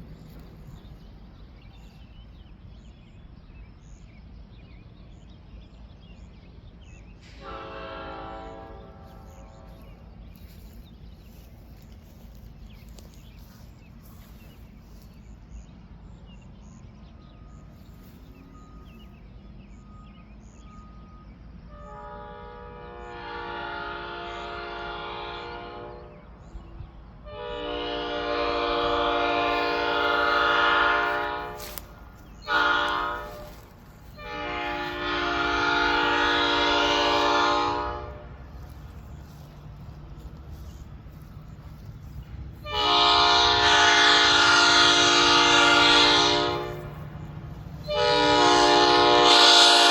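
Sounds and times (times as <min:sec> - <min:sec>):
locomotive air horn chord: 0:07.2 - 0:14.3, 0:21.7 - 0:26.4, 0:27.2 - 0:39.6, 0:40.2 - 0:49.9.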